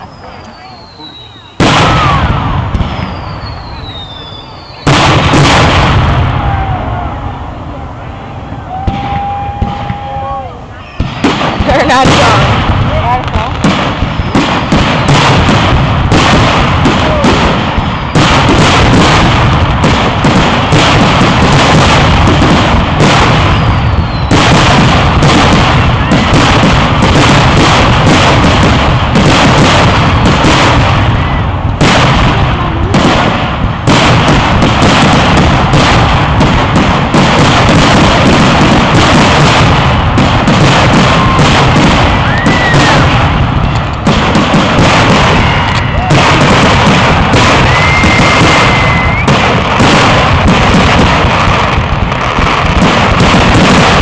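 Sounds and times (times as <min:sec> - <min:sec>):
fireworks booming and crackling: 0:00.0 - 0:54.0.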